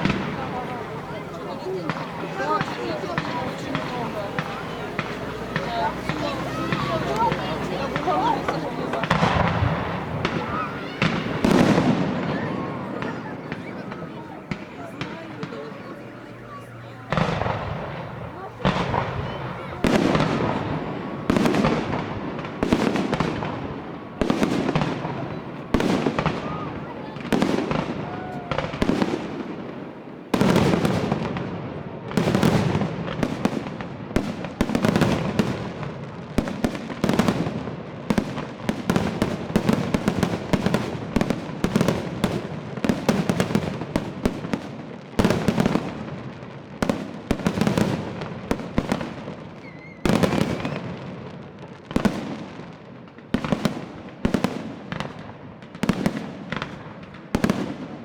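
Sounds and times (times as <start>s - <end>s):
fireworks crackling: 0.0s - 58.0s.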